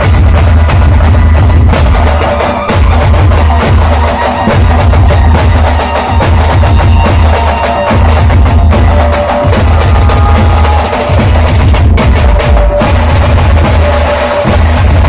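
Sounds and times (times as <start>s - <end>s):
booming bass: 0.0s - 2.1s, 8.0s - 13.9s
drum band drumming: 0.0s - 15.0s.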